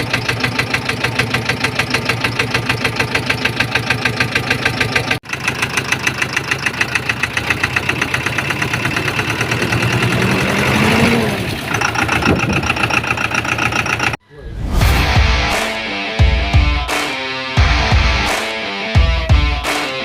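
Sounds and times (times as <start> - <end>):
diesel engine knocking: 0.0 - 14.2.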